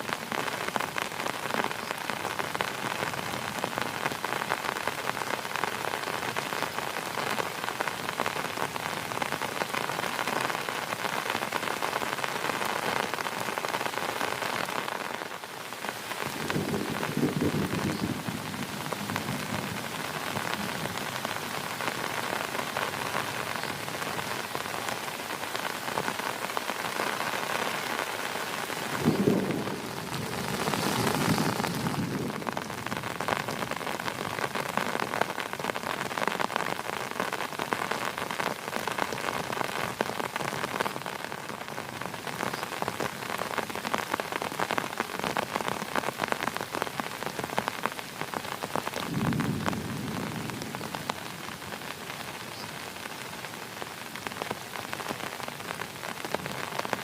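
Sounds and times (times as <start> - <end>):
heavy rain falling: 0.0 - 57.0
thunder rumbling: 16.3 - 21.1, 28.8 - 33.7, 49.0 - 51.8.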